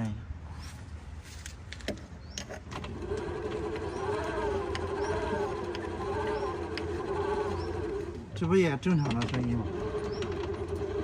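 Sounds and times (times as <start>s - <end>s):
electric motor whine: 2.8s - 11.0s.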